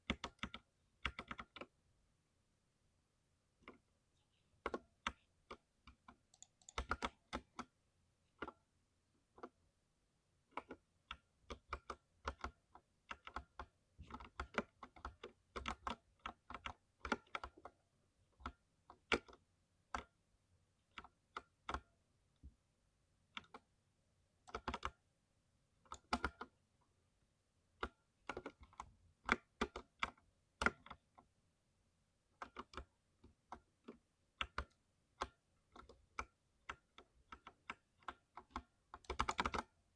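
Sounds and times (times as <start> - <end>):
mechanical keyboard typing: 0.1 - 1.7, 6.3 - 7.6, 36.7 - 39.8.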